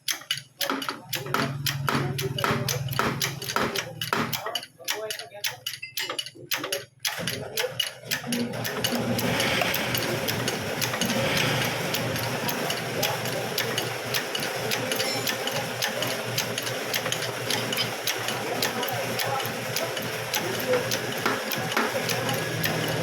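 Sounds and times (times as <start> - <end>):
regular machine clicking: 0.0 - 23.0
machine humming: 8.5 - 23.0.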